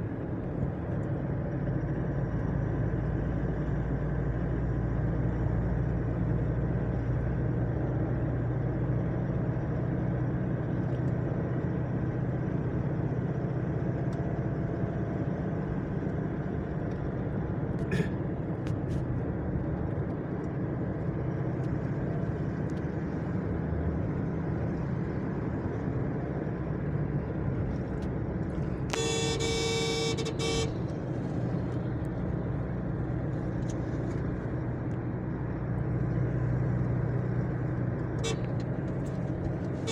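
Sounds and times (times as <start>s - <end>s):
vehicle driving low rumble: 0.0s - 39.9s
vehicle horn: 28.9s - 31.3s, 38.2s - 38.6s.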